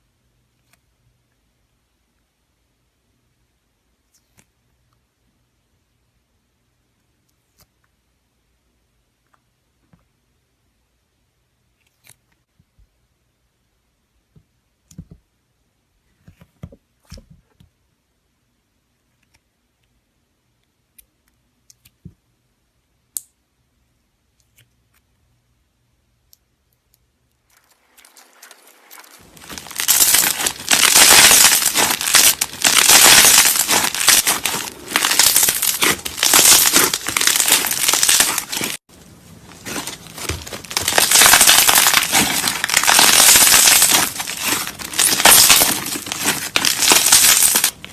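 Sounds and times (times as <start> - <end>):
slime crackling and crinkling: 27.5 - 47.9.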